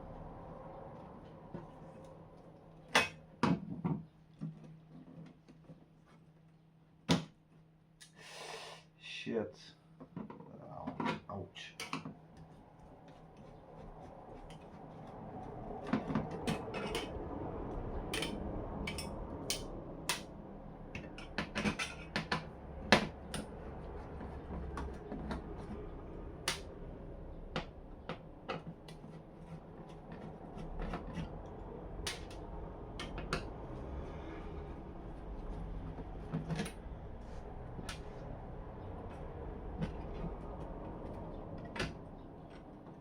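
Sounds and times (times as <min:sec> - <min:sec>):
tools and parts clicking and knocking: 0:15.8 - 0:17.3, 0:18.0 - 0:20.3, 0:20.9 - 0:25.8, 0:27.5 - 0:33.6, 0:35.8 - 0:36.9.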